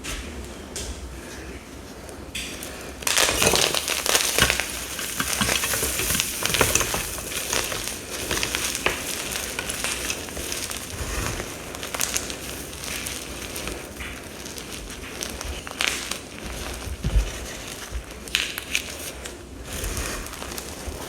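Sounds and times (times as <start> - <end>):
powder bombs crushed in hands: 3.0 - 18.9.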